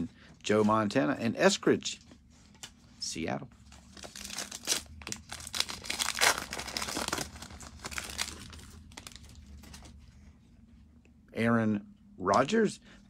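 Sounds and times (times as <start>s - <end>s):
foil wrapper tearing and crinkling: 3.9s - 9.7s.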